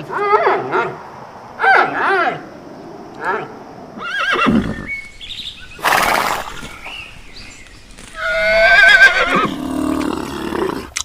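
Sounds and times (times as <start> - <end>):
horse whinnying: 3.2 - 4.9, 5.8 - 6.6, 8.1 - 10.8.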